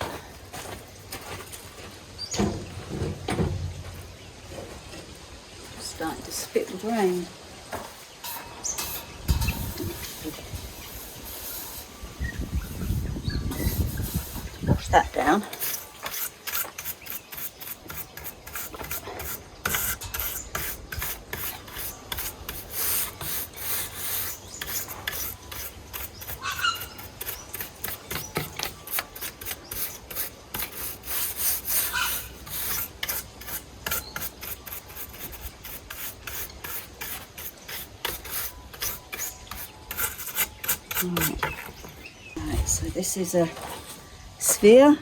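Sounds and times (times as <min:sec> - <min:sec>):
rasping strokes against wood: 0:13.5 - 0:42.0.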